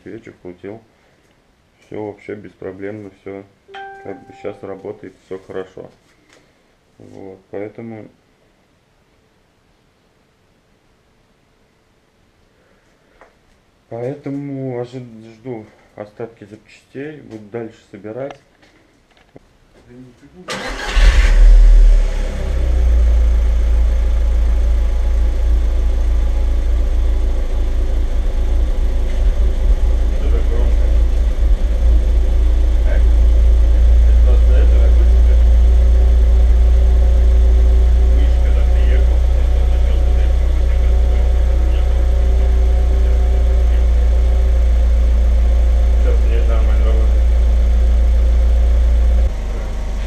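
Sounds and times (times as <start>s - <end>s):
car engine idling: 20.6s - 50.0s.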